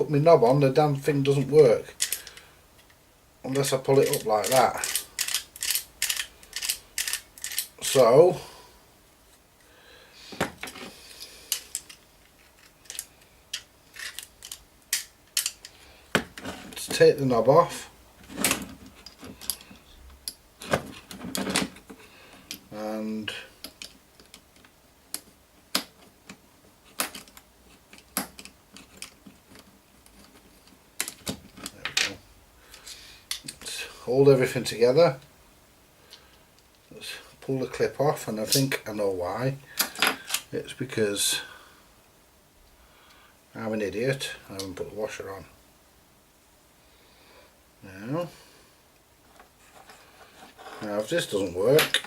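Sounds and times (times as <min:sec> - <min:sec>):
small parts and tools clicking: 0:01.9 - 0:03.0, 0:03.6 - 0:08.0, 0:10.4 - 0:16.8, 0:18.4 - 0:22.7, 0:23.6 - 0:33.7, 0:39.7 - 0:40.5
metallic clicks and clatter: 0:04.0 - 0:07.7.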